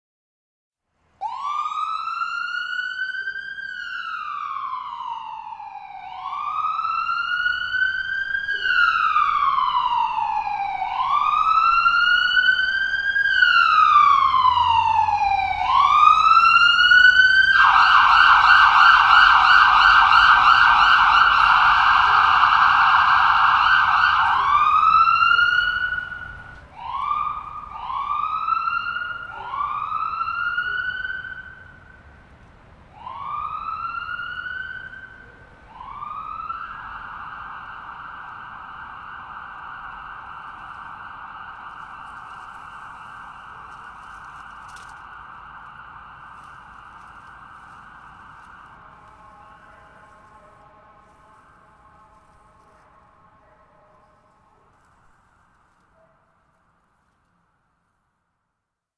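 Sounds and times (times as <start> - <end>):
distant ambulance siren wailing: 1.2 - 57.1.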